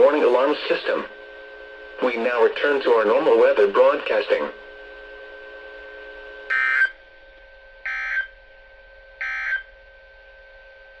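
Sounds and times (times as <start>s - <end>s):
faint steady tone and hum: 0.0s - 11.0s
digital data tone bursts: 6.5s - 6.9s, 7.9s - 8.3s, 9.2s - 9.6s.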